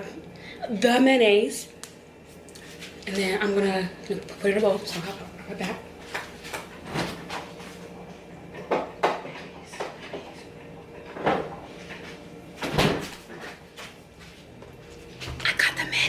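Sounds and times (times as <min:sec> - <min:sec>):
doors opening and shutting: 0:10.2 - 0:13.6.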